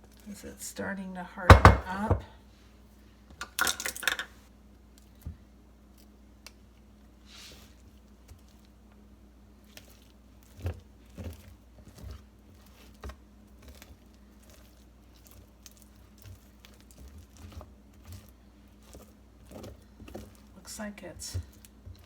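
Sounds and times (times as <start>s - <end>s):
brittle knocking and crinkling: 1.5s - 2.3s.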